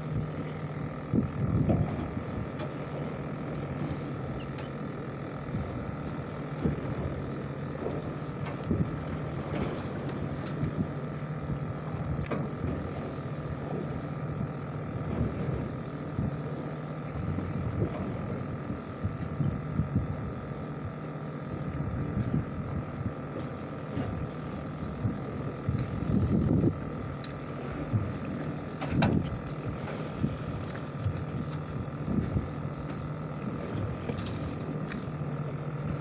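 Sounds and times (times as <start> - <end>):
boat engine droning: 0.0 - 36.0
water noise: 0.0 - 36.0
wind noise: 1.1 - 2.6, 24.0 - 33.0
click: 12.1 - 12.4, 27.2 - 27.4, 33.4 - 35.1.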